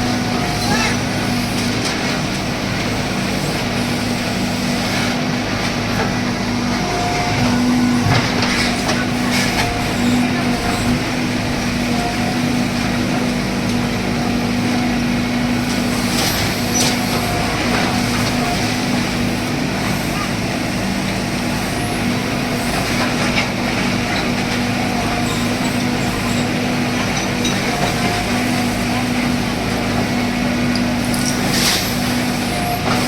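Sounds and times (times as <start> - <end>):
heavy machine engine running: 0.0 - 33.0.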